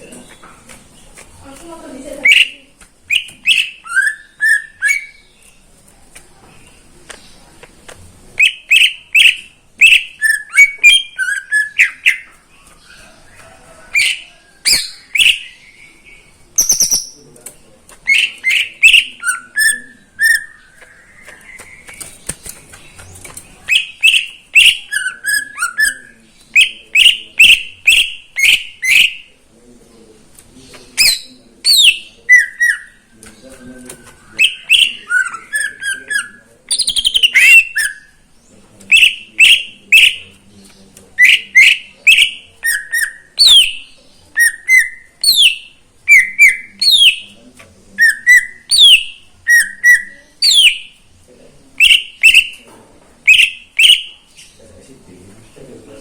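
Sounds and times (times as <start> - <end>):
bird singing chirps and whistles: 3.1 - 5.3, 8.4 - 12.3, 14.0 - 17.2, 18.1 - 22.1, 23.7 - 29.2, 31.0 - 38.2, 38.9 - 40.3, 41.2 - 47.3, 48.0 - 50.9, 51.8 - 52.6, 53.3 - 54.2.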